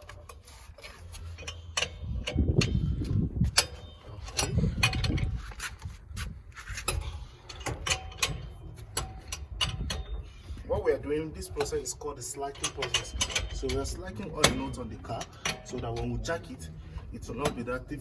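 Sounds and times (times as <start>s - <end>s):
spanner clicking and scraping: 0.0s - 5.9s, 6.6s - 10.6s, 11.3s - 18.0s
low rumbling noise: 1.2s - 12.3s.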